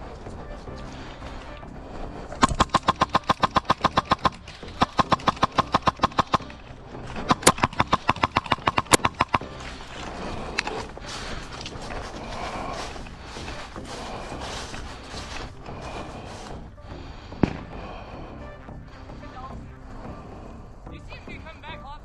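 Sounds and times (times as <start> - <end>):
airsoft gun firing bursts: 2.4 - 6.6, 7.2 - 9.5.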